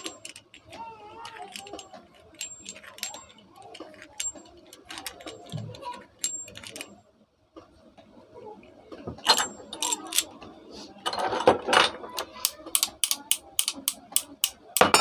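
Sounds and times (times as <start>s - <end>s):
metal tools clicking and clinking: 0.0s - 7.0s, 9.2s - 10.3s, 11.1s - 15.0s.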